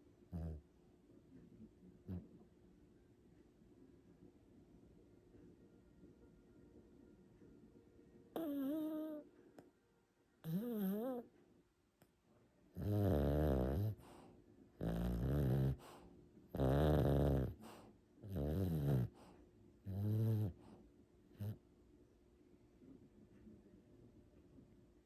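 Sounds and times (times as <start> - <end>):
pet snoring: 0.3 - 0.6, 8.4 - 9.2, 10.4 - 11.2, 12.8 - 14.1, 14.8 - 19.2, 19.8 - 20.6, 21.4 - 21.6.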